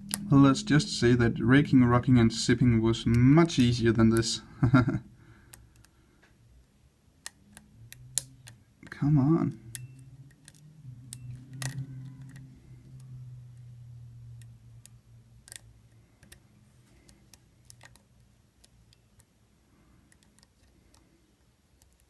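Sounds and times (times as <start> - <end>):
lock pick clicking in padlock: 9.7 - 12.5.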